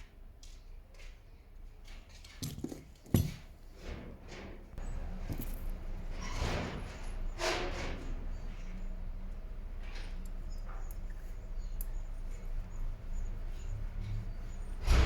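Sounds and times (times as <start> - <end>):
metal parts and tools clinking: 2.3 - 3.5, 4.8 - 6.5.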